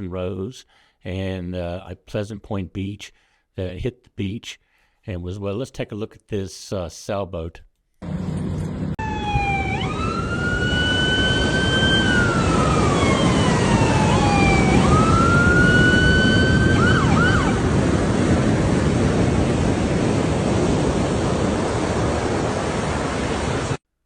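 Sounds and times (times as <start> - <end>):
wind noise: 8.4 - 23.8
emergency siren wailing and yelping: 9.0 - 17.9
surf rushing: 15.9 - 23.8.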